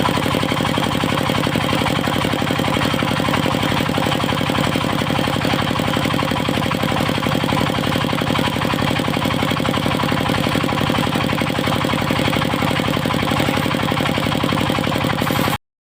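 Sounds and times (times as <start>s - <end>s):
stationary engine pulsing: 0.0s - 15.6s.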